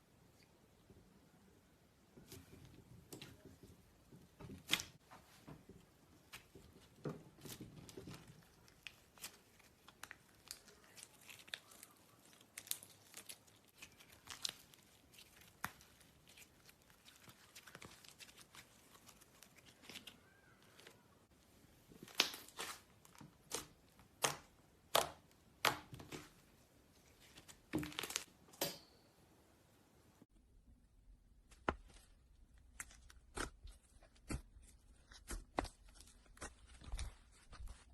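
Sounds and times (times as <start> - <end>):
slime crackling and popping: 7.8 - 20.5.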